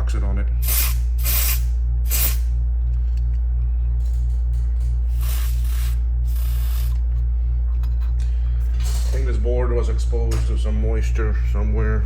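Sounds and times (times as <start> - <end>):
pulsing electrical hum: 0.0 - 12.0
aerosol spray hissing: 0.6 - 2.4, 5.2 - 7.0.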